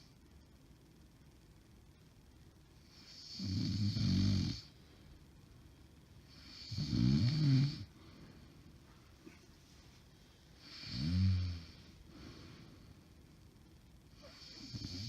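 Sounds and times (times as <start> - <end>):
woman snoring: 3.0 - 4.7, 6.4 - 7.9, 10.6 - 11.8, 14.2 - 15.0.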